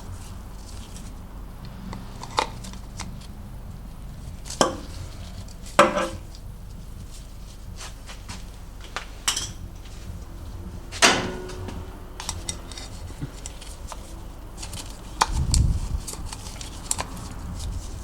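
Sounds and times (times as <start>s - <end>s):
metal tools clinking: 9.3s - 9.6s
sharp metal clank: 11.0s - 11.9s.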